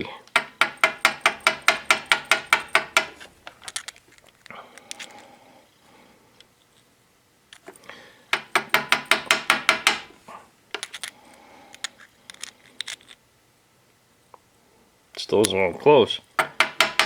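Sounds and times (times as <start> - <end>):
spark plug tapping on hard surface: 0.3 - 3.2, 8.3 - 10.1.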